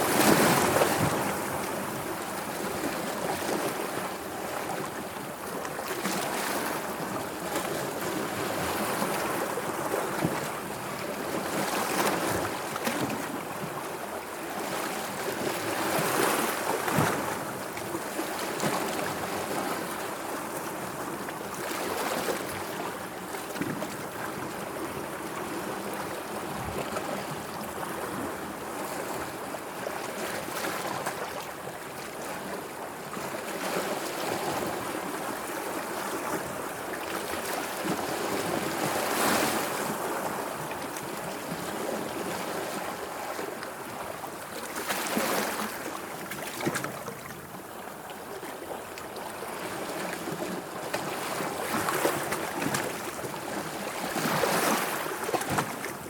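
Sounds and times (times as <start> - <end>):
sea water lapping: 33.6 - 56.0.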